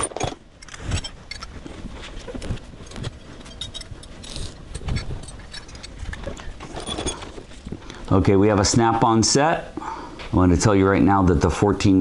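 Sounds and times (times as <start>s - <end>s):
steel wrenches clinking and clattering: 0.0s - 1.6s, 2.8s - 7.7s.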